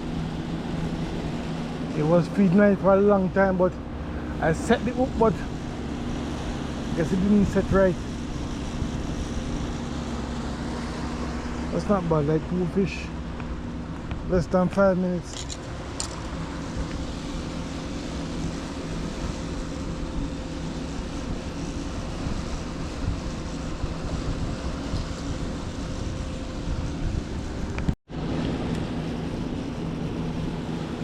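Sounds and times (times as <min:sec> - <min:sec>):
low steady hum: 0:00.0 - 0:31.0
wind on microphone: 0:16.1 - 0:28.0.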